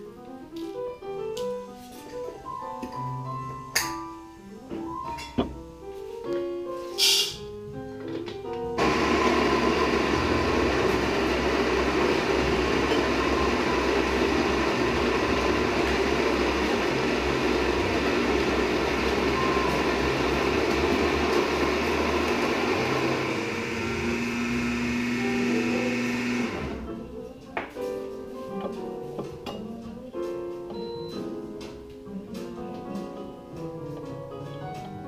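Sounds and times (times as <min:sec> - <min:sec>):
piano music: 0:00.0 - 0:35.0
coffee grinder whirring: 0:08.8 - 0:26.8.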